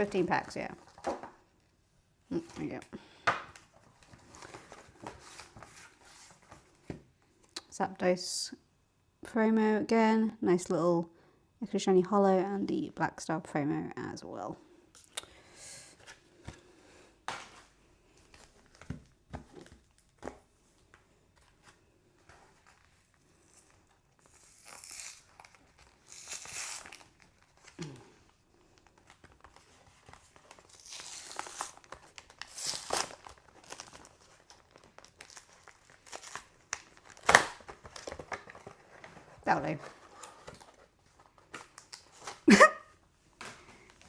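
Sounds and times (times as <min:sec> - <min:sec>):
plastic crinkling: 0:22.7 - 0:42.6
card backing tearing: 0:24.2 - 0:27.3.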